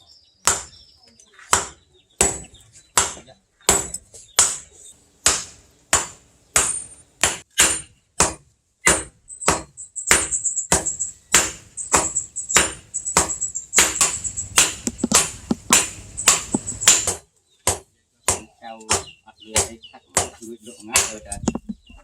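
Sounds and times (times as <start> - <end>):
hammer striking steel on anvil: 5.2 - 17.2.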